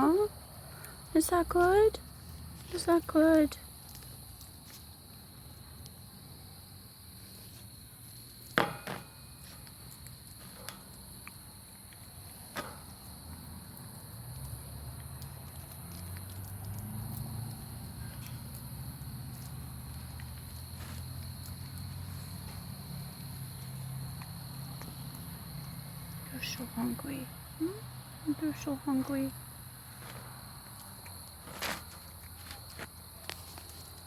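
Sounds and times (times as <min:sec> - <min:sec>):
crickets chirping: 0:00.0 - 0:34.0
sharp knock: 0:08.6 - 0:09.2.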